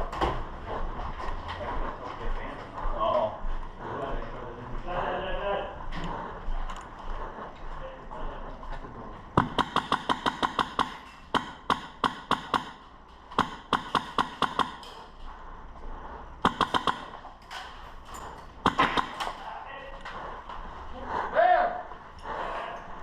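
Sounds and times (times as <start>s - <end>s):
airsoft gun firing bursts: 9.4s - 14.9s, 16.4s - 17.3s, 18.6s - 19.4s.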